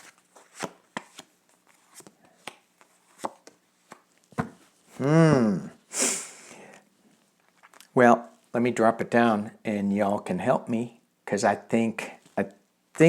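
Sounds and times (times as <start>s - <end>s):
man humming hmm: 5.0s - 6.5s.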